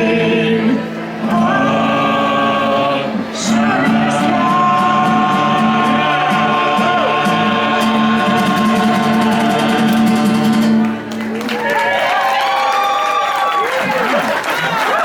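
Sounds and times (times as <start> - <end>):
voices holding a sung chord: 0.0 - 11.0
audience clapping: 10.6 - 15.0.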